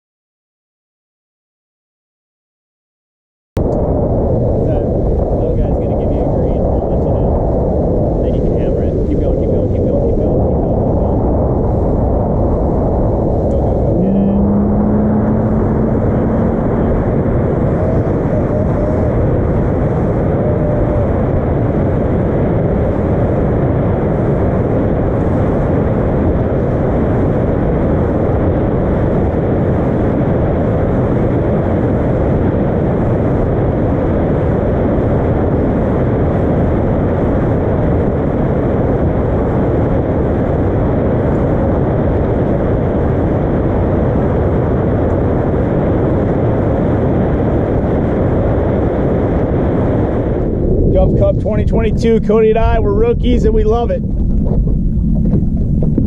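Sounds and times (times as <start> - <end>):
outboard motor and wind rush: 3.6 - 56.0
rising tone: 13.1 - 22.0.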